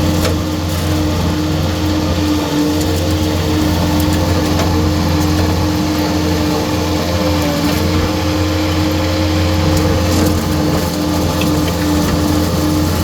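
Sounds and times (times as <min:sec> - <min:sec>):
hydraulic saw whining: 0:00.0 - 0:13.0
skid steer engine running: 0:00.0 - 0:13.0.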